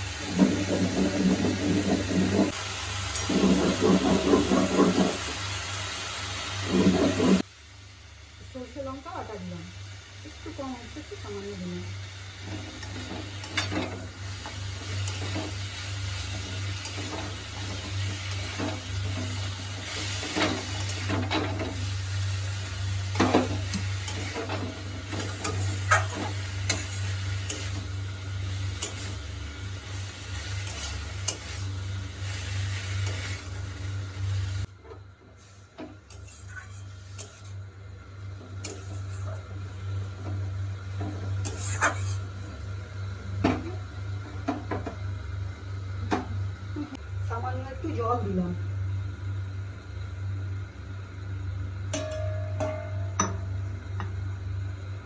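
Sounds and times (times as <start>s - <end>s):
vegetables sizzling in a frying pan: 0.0s - 34.7s, 35.3s - 51.9s
steady low hum: 6.7s - 55.0s.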